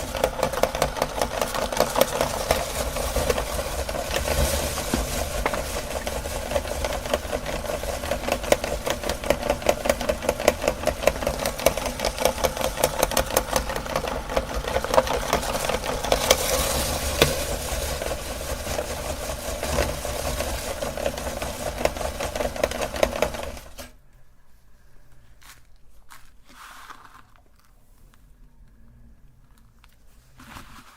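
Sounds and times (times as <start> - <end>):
electric meat grinder grinding: 0.0 - 23.9.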